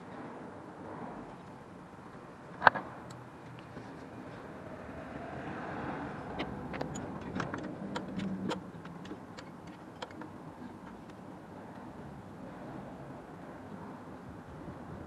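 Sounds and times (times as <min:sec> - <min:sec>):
metal hand tools clicking: 0:06.3 - 0:10.2.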